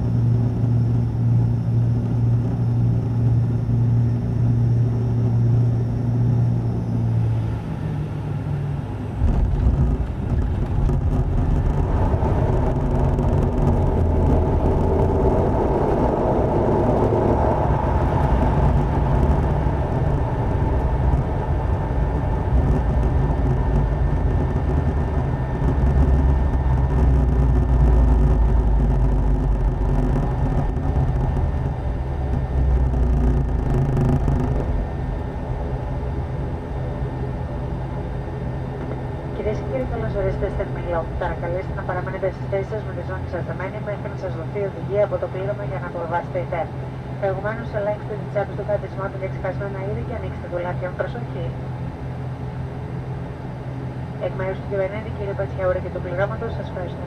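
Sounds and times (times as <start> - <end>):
rush of braking aircraft noise: 0.0 - 50.6
propeller drone: 0.0 - 57.0
runway rumble: 0.0 - 57.0
wheels touching down rumble: 9.0 - 39.4.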